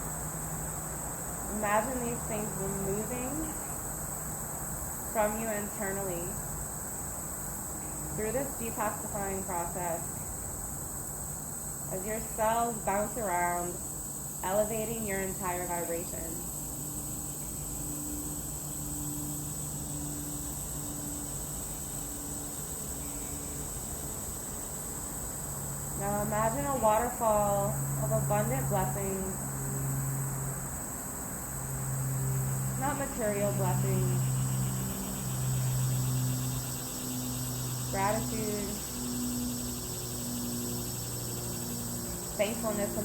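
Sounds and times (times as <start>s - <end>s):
insects chirring: 0.0s - 43.0s
low steady hum: 0.0s - 43.0s.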